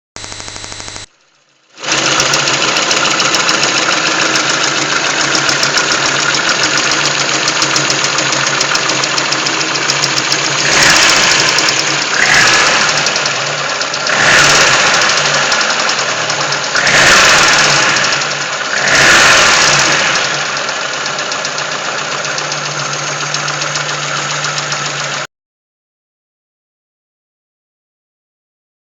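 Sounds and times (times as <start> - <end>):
engine revving: 1.8 - 25.3
car engine idling with knock: 1.9 - 18.8, 19.5 - 25.2.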